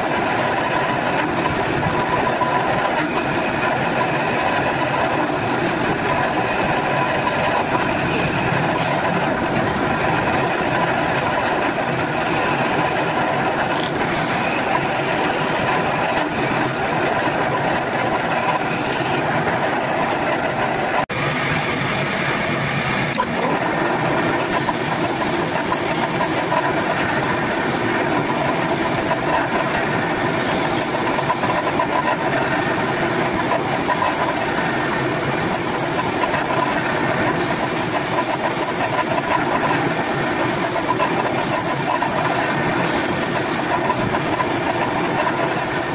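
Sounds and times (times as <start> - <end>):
workshop machine running: 0.0 - 45.9.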